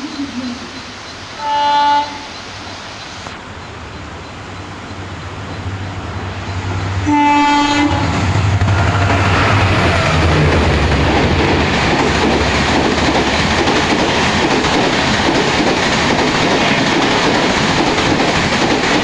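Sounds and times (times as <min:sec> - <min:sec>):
approaching train rumble: 0:00.0 - 0:19.0
locomotive air horn blasts: 0:01.4 - 0:02.3, 0:07.0 - 0:08.2.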